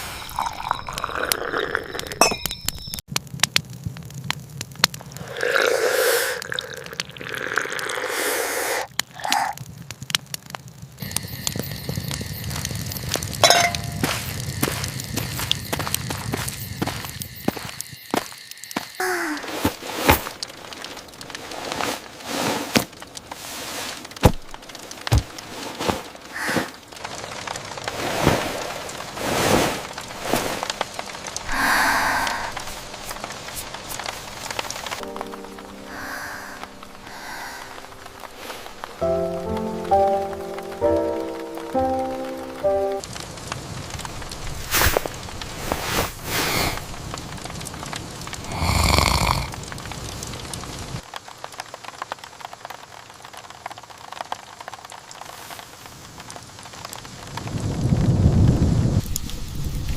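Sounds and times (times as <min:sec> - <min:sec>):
campfire cracking: 0:00.0 - 0:59.9
rain: 0:00.0 - 0:59.9
breathy sigh: 0:19.0 - 0:19.6, 0:26.3 - 0:26.7, 0:31.5 - 0:32.7, 0:35.9 - 0:38.0, 0:48.5 - 0:49.5
low rumble of thunder: 0:57.4 - 0:59.9.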